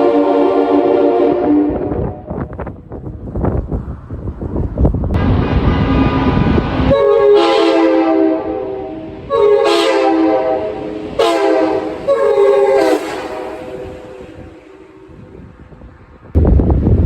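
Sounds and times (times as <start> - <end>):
train horn blasts: 0.0 - 2.5, 6.8 - 15.4
rush of air: 1.6 - 7.3, 10.3 - 17.0
low rumble: 1.6 - 7.4.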